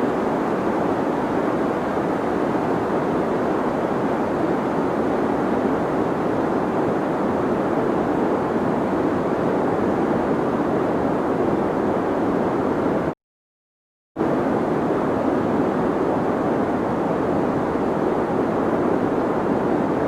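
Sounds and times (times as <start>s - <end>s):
deep white noise hiss: 0.0s - 13.0s.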